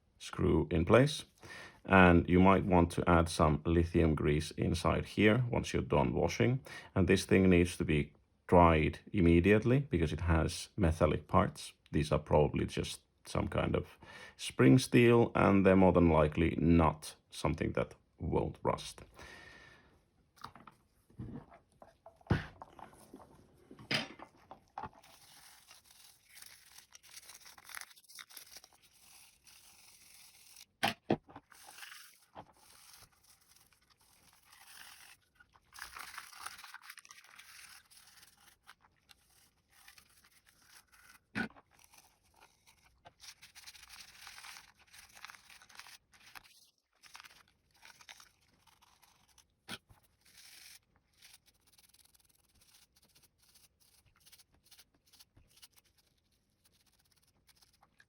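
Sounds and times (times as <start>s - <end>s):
scrubbing and scraping plastic parts: 20.3s - 58.0s.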